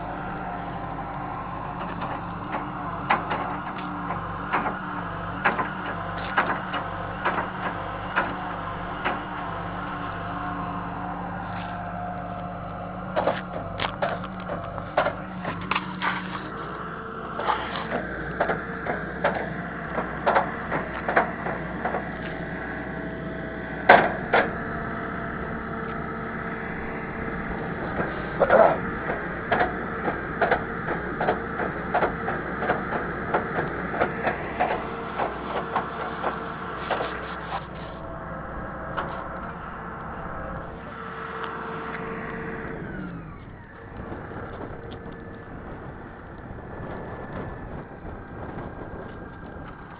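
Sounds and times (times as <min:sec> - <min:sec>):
excavator diesel engine running: 0:00.0 - 0:49.9
metal clanks and knocks: 0:13.1 - 0:16.7.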